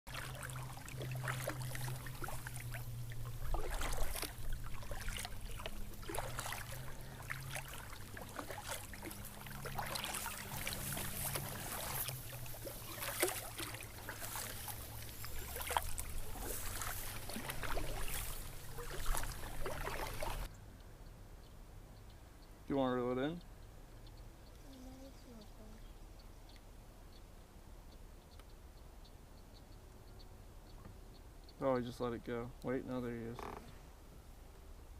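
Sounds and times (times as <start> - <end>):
paddle splashes: 0.1 - 20.5
water splashing around kayak: 0.1 - 20.5
low hum: 0.1 - 22.5.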